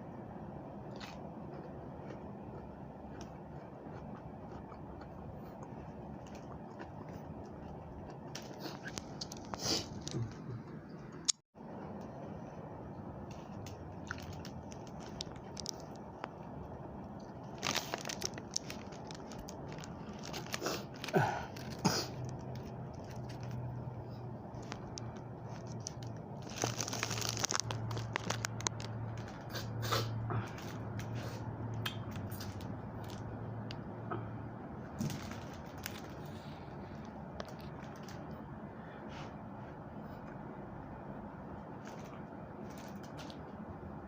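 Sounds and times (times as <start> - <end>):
chewing crisp vegetables: 0.8 - 11.4, 13.3 - 33.8.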